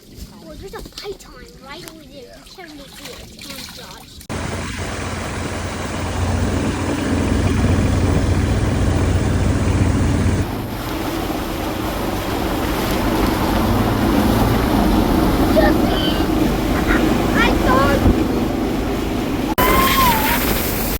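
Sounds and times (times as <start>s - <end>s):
rush of wind and water: 0.0s - 20.9s
boat motor running: 4.3s - 20.3s.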